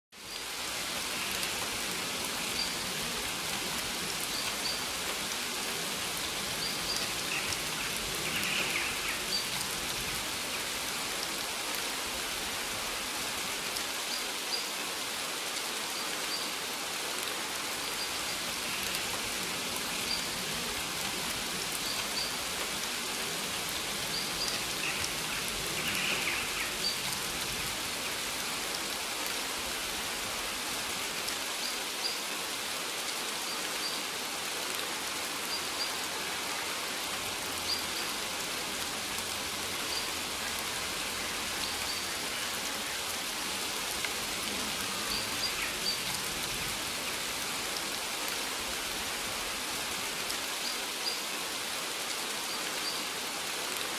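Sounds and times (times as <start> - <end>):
rain pattering on leaves: 0.2 - 53.9.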